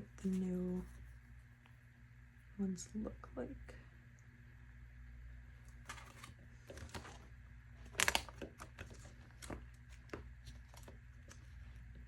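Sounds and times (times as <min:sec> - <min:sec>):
plastic pages rustling and crinkling: 0:05.8 - 0:12.0.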